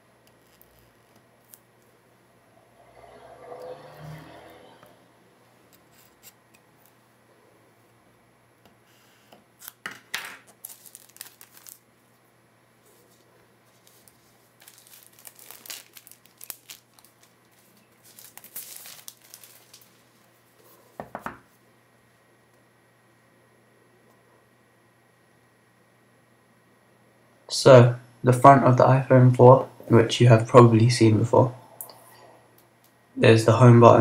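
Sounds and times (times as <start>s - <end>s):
plastic shrink-wrap crinkling: 10.4s - 11.9s, 13.1s - 20.3s.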